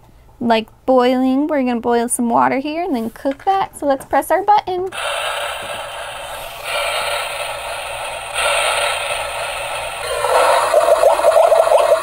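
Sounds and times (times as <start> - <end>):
toy electronic sizzle sound: 5.0 - 12.0
toy electronic bubbling blips: 6.2 - 12.0.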